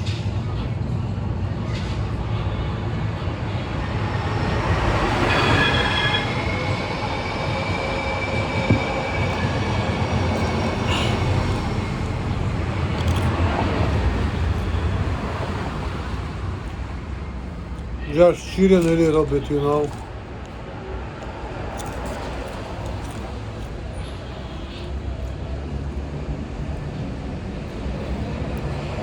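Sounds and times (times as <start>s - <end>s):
train rumbling past: 0.0s - 29.0s
train wheels squealing: 1.6s - 15.6s.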